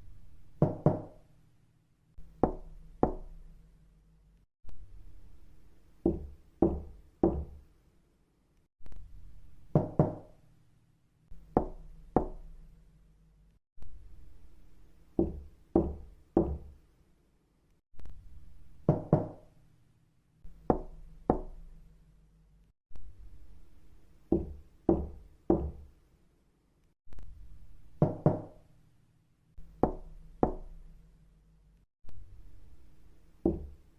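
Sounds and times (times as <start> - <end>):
knocking on a door: 0.6 - 1.1, 2.4 - 3.2, 6.0 - 7.6, 9.8 - 10.3, 11.5 - 12.4, 15.2 - 16.8, 18.9 - 19.4, 20.6 - 21.5, 24.3 - 25.9, 28.0 - 28.5, 33.4 - 33.8.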